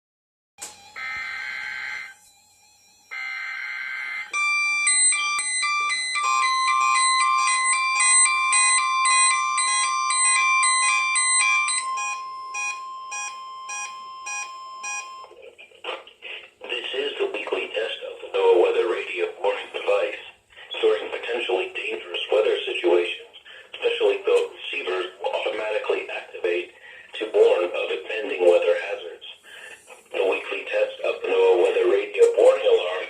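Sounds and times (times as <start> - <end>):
electronic tune of repeating notes: 0.6 - 15.3
steady alarm tone: 0.6 - 15.3
short buzzy bursts: 0.7 - 3.4.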